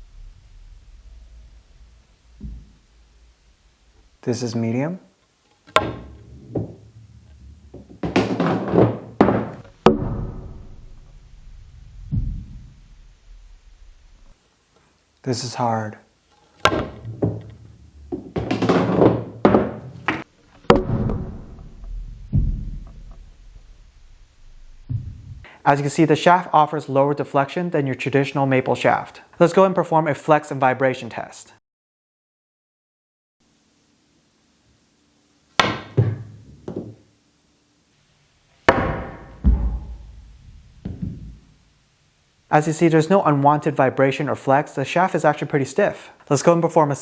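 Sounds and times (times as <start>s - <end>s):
pool balls knocking on table: 5.7s - 9.6s, 16.6s - 20.2s, 35.6s - 37.0s, 38.7s - 40.0s, 40.8s - 41.4s
cue striking ball: 5.7s - 10.1s, 16.5s - 21.0s, 35.6s - 37.0s, 38.7s - 40.1s, 40.8s - 41.4s.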